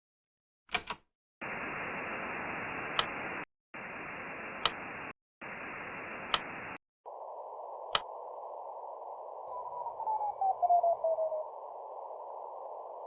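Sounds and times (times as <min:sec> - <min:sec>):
clicks: 0:00.7 - 0:01.1, 0:02.8 - 0:03.4, 0:04.3 - 0:05.1, 0:06.0 - 0:06.8, 0:07.8 - 0:08.2
radio static hiss: 0:01.4 - 0:10.3, 0:10.9 - 0:13.0.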